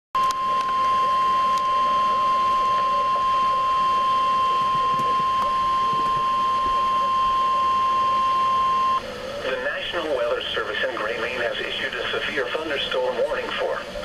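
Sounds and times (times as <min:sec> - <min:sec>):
steady alert alarm tone: 0:00.4 - 0:09.1.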